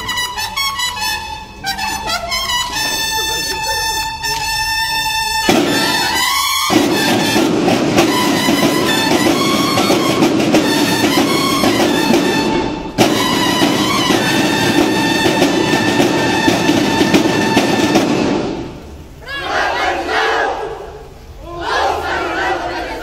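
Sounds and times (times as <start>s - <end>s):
brass band music: 0.0s - 20.6s
fast drumming: 5.4s - 18.8s.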